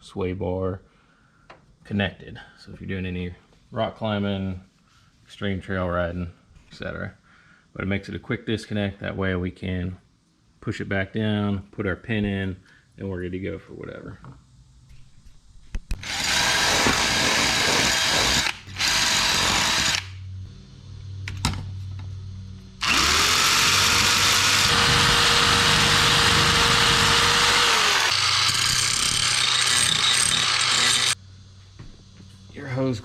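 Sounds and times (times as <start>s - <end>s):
power tool motor whining on metal: 16.0s - 20.2s, 22.8s - 31.2s.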